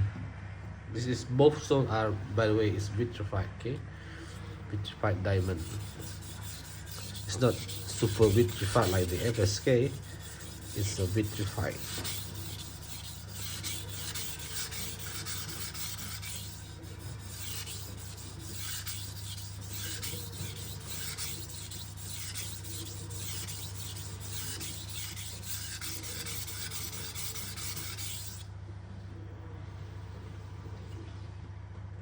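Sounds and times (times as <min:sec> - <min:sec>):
knife scraping on whetstone: 0:04.8 - 0:28.4.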